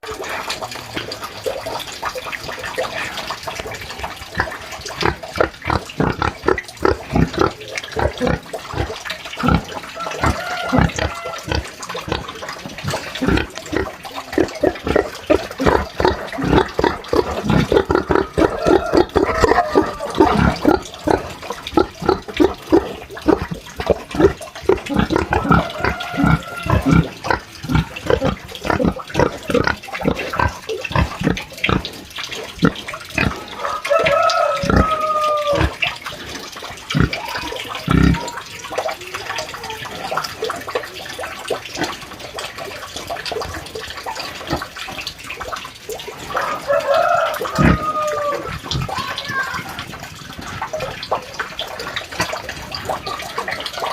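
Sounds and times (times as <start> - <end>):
pigs grunting: 0.0 - 38.4, 46.3 - 49.0
high-pitched pig calls: 4.3 - 38.4, 46.2 - 51.3.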